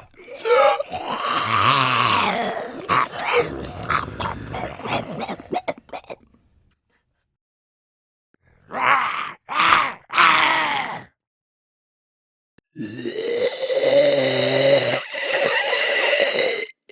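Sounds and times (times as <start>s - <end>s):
zombie snarling growl: 0.0s - 5.8s, 8.6s - 11.1s, 12.8s - 16.7s
gasping grunts and clicks: 0.0s - 6.6s.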